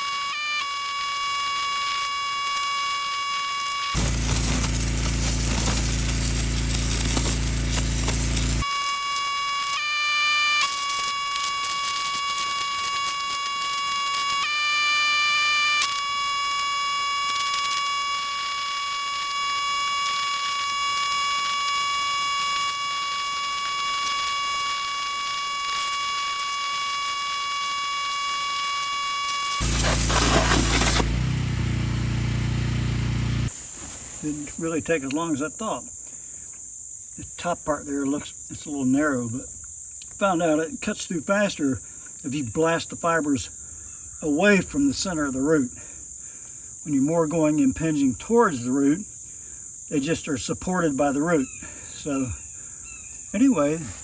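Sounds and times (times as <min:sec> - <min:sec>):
pressure washer high whine: 0:00.0 - 0:33.6
water spray hissing: 0:03.9 - 0:08.7, 0:17.4 - 0:34.4
low engine hum: 0:04.0 - 0:08.6, 0:29.6 - 0:33.5.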